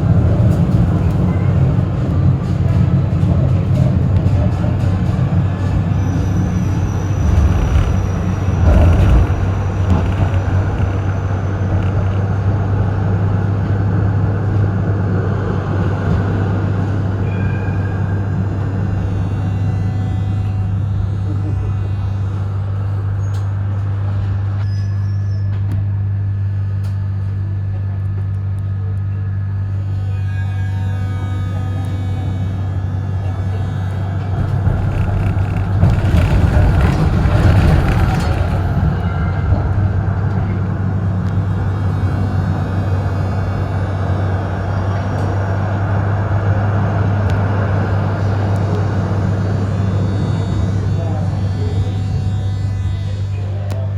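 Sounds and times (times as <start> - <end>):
tram humming: 0.0 - 24.6, 30.6 - 53.9
faint clicks and rattles: 6.8 - 12.6, 34.0 - 39.1.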